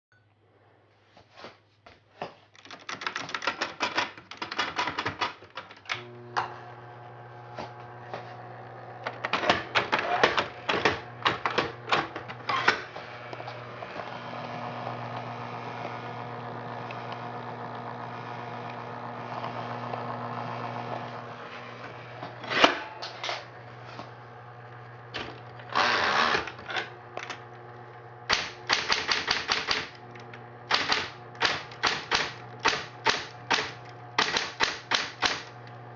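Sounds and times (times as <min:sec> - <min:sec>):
typewriter keystroke clacks: 0:02.6 - 0:05.8, 0:28.3 - 0:30.0, 0:30.7 - 0:35.5
typewriter motor hum: 0:02.9 - 0:35.9.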